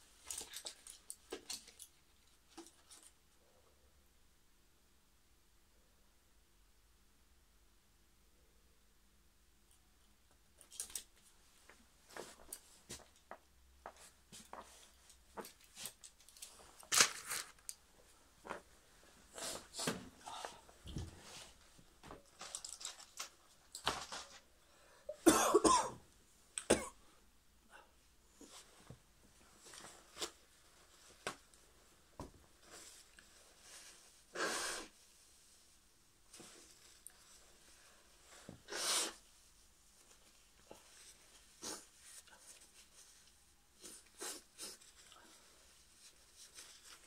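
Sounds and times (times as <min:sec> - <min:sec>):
person coughing: 0:25.1 - 0:26.0, 0:26.6 - 0:27.0.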